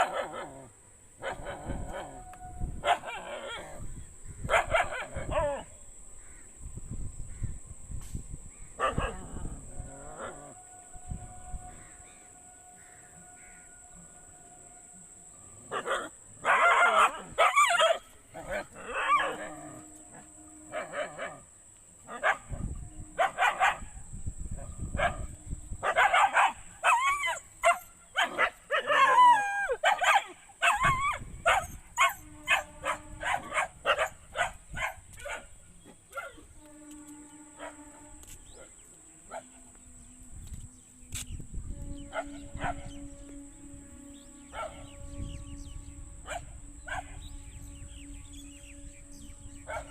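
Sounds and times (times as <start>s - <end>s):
dogs barking: 0.0s - 2.2s, 2.8s - 3.8s, 4.5s - 5.7s, 8.8s - 9.4s, 15.7s - 19.6s, 20.7s - 21.5s, 22.1s - 22.6s, 23.2s - 23.9s, 25.0s - 36.5s, 42.1s - 42.9s, 44.5s - 44.9s, 46.3s - 47.2s, 49.7s - 49.9s.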